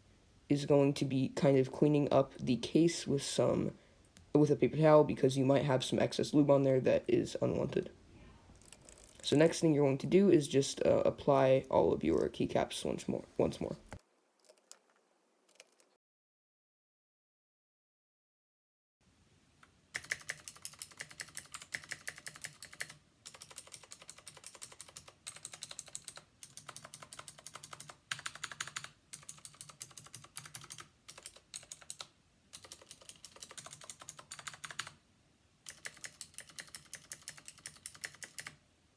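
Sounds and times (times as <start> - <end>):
mechanical keyboard typing: 13.4 - 15.9, 20.0 - 35.0, 35.6 - 38.6.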